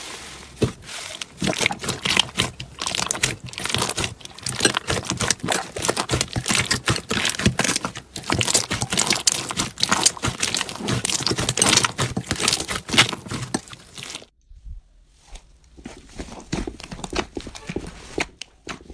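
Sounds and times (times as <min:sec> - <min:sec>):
slime crackling and popping: 0:00.9 - 0:14.3.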